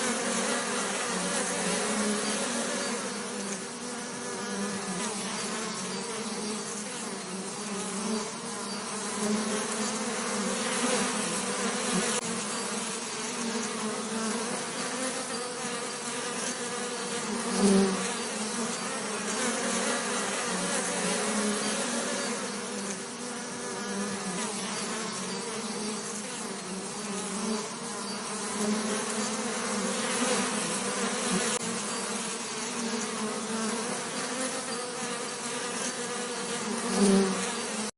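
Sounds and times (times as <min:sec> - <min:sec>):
bees buzzing: 0:00.0 - 0:37.9.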